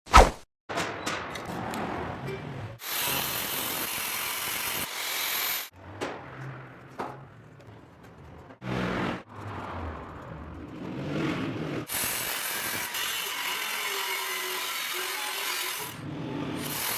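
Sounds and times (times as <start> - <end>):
power tools cutting or grinding: 2.8 - 5.8, 11.7 - 16.9.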